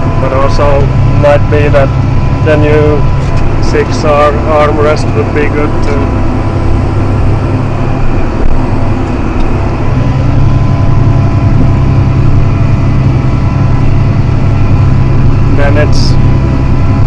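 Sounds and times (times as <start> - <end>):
tractor diesel engine droning: 0.0 - 17.0.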